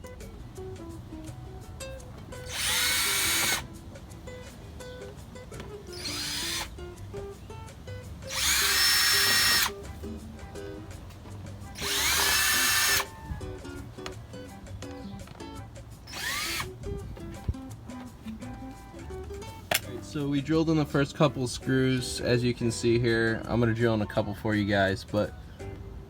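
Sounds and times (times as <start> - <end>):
power drill driving screws: 2.4 - 3.7, 5.9 - 6.8, 8.2 - 9.8, 11.7 - 13.1, 16.1 - 16.7.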